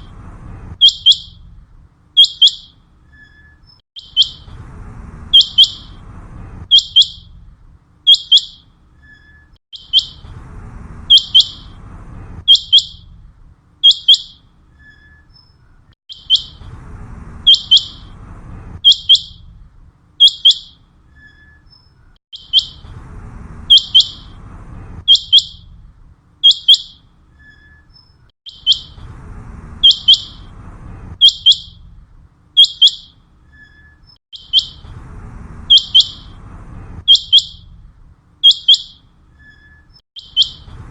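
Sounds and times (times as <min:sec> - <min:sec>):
quail calling: 0:28.5 - 0:29.0, 0:29.8 - 0:30.5, 0:34.4 - 0:34.8, 0:35.7 - 0:36.4, 0:38.4 - 0:39.0, 0:40.2 - 0:40.7.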